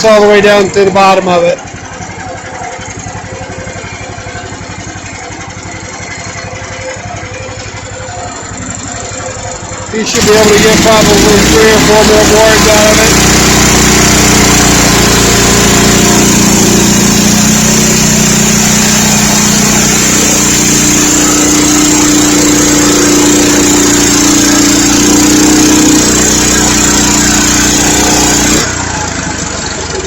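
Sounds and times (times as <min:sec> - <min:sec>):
sawmill gas engine running: 0:00.0 - 0:30.0
band saw blade cutting wood: 0:10.0 - 0:29.0.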